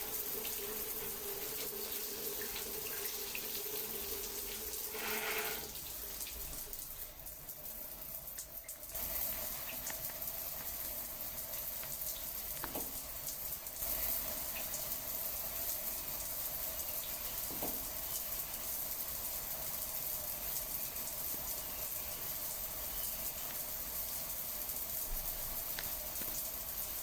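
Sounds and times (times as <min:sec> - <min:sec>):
flowing water rushing: 0:04.9 - 0:05.8.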